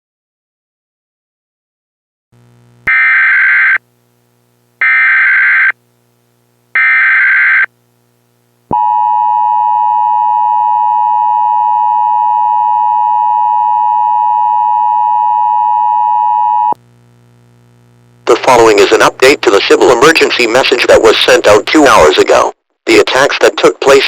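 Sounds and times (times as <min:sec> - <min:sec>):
data burst tones: 0:02.9 - 0:03.8, 0:04.8 - 0:05.8, 0:06.8 - 0:07.7.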